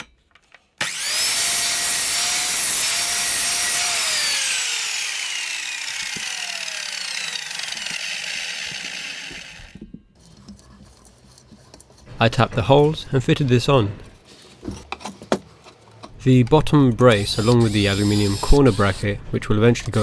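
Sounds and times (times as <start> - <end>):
miter saw cutting metal: 0.8 - 9.8, 17.1 - 19.2, 19.8 - 20.0
saw blade winding down whine: 0.8 - 9.8, 17.1 - 19.2.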